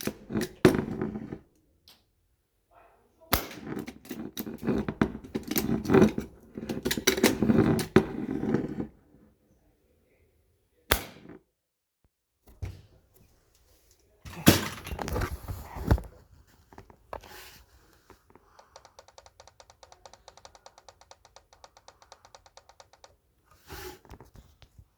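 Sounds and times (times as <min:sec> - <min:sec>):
airsoft rifle shots: 0:03.3 - 0:03.9, 0:10.9 - 0:11.4.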